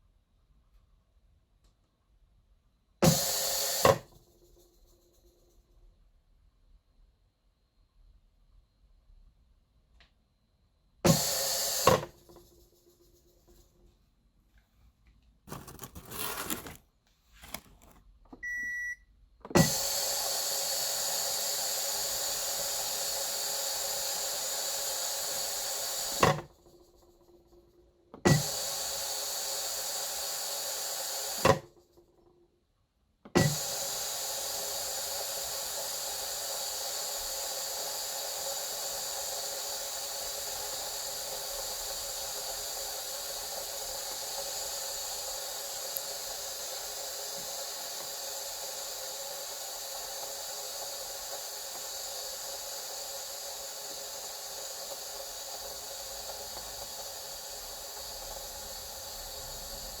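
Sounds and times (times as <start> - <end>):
steam hissing from valve: 3.0 - 4.1, 11.1 - 12.3, 19.6 - 26.5, 28.3 - 31.7, 33.4 - 60.0.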